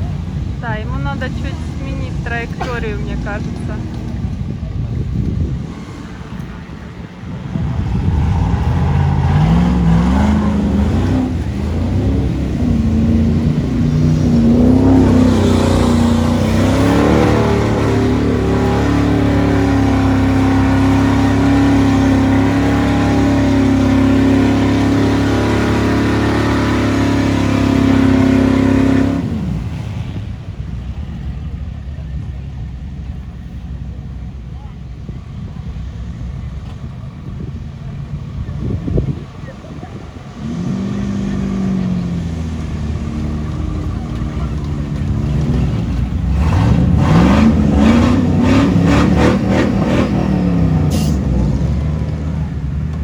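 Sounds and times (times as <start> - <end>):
engine revving hard: 5.4 - 30.2, 40.0 - 52.9.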